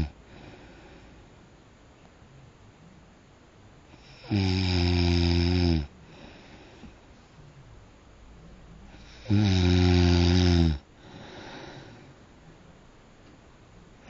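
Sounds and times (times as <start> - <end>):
quiet breathing: 0.0 - 3.1, 3.8 - 12.8
loud snore: 4.0 - 5.9, 9.0 - 11.7.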